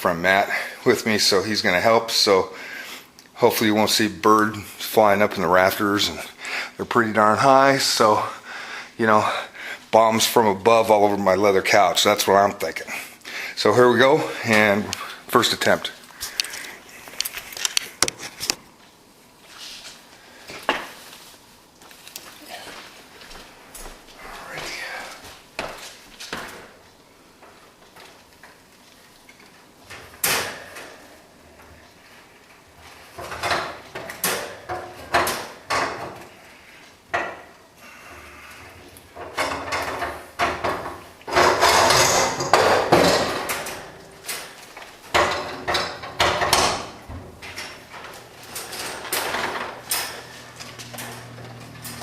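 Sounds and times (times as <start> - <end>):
knocks clatter and scraping: 39.1 - 52.0.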